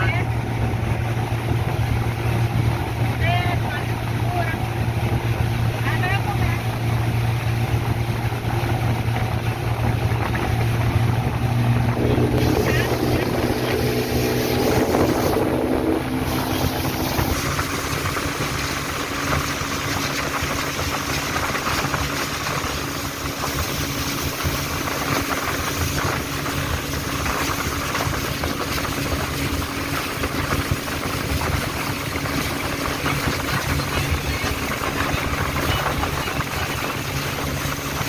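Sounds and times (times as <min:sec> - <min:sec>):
boat motor running: 0:00.0 - 0:38.0
rushing noise: 0:09.9 - 0:28.1.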